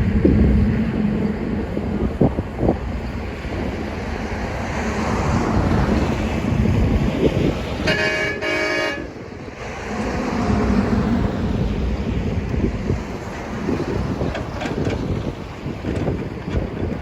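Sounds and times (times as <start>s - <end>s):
vehicle horn honks: 7.8s - 9.1s
excavator diesel engine running: 13.0s - 17.0s.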